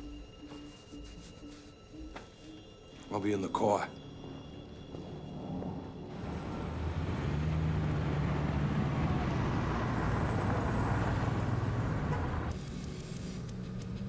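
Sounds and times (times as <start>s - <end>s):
road noise: 3.1s - 14.0s
car engine hum: 4.9s - 14.0s.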